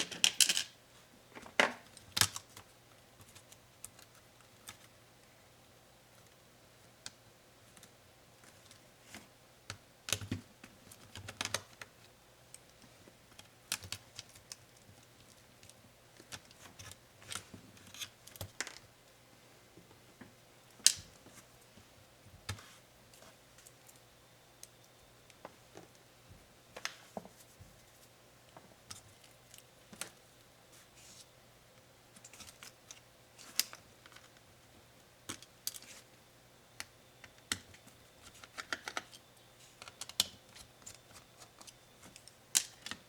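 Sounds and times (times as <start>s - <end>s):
laptop parts and tools clicking: 9.7s - 18.9s, 35.2s - 36.0s, 36.8s - 43.0s.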